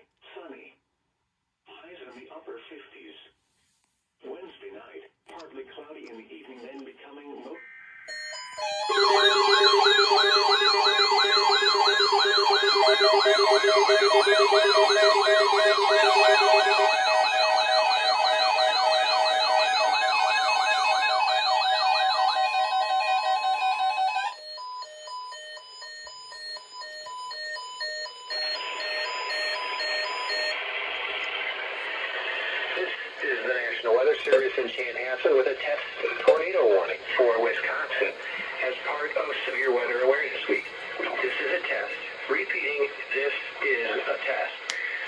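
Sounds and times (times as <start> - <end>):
electronic siren warbling: 8.0 - 24.4.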